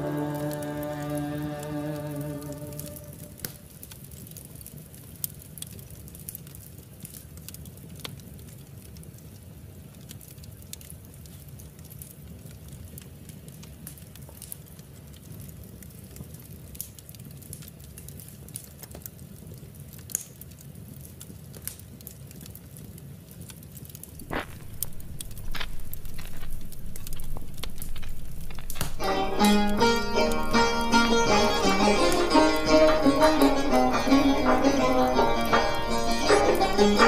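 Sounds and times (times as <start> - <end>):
plucked-string music: 0.0 - 3.5, 24.2 - 37.0
wood fire crackling: 0.0 - 37.0.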